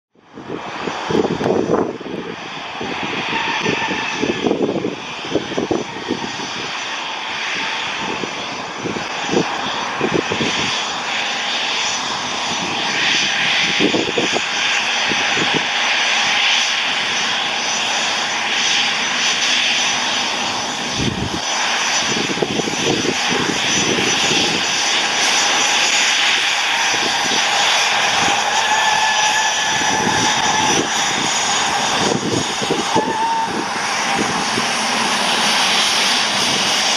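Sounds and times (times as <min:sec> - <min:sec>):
jet engines roaring with whine: 0:00.2 - 0:36.9.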